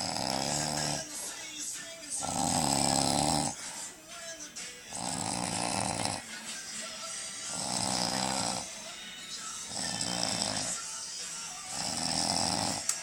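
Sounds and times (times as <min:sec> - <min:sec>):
man snoring loudly: 0:00.0 - 0:01.1, 0:02.2 - 0:03.7, 0:04.9 - 0:06.3, 0:07.4 - 0:08.8, 0:09.6 - 0:10.9, 0:11.6 - 0:12.9.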